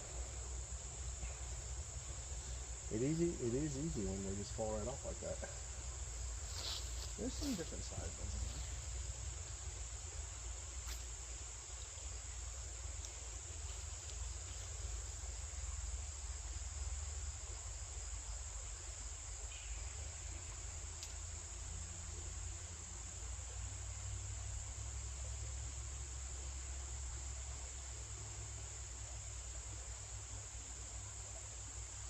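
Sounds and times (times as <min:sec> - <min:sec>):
insects trilling: 0:00.0 - 0:32.0
low steady rumble: 0:00.0 - 0:32.0
faint clicks: 0:13.0 - 0:13.2, 0:20.9 - 0:21.2.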